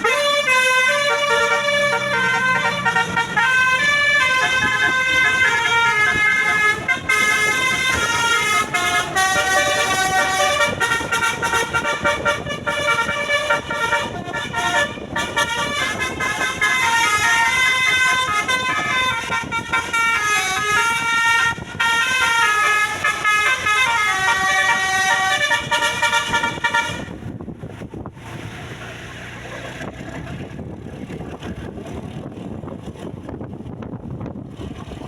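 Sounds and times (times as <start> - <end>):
bus multi-tone horn melody: 0.0 - 27.6.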